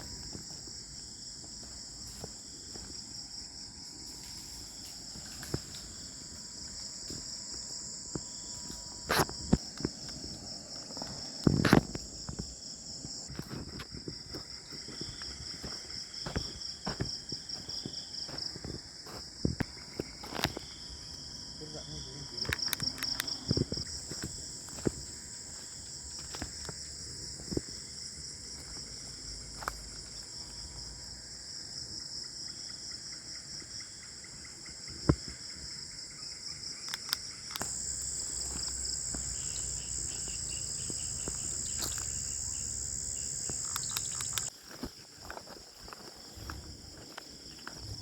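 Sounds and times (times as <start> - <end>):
insects chirring chorus: 0.0 - 48.0
loud high-pitched insect: 36.1 - 48.0.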